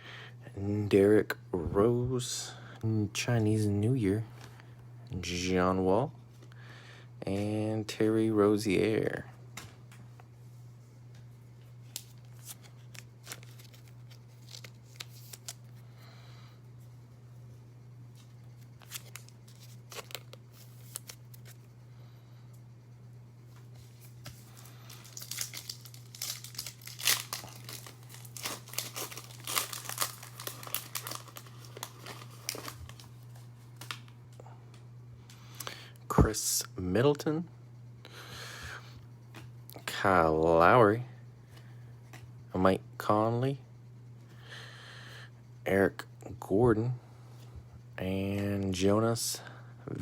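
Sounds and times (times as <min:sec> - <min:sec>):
low electrical hum: 0:00.0 - 0:50.0
card wrappers rustling and tearing: 0:11.8 - 0:15.8, 0:18.2 - 0:21.6, 0:23.8 - 0:34.2.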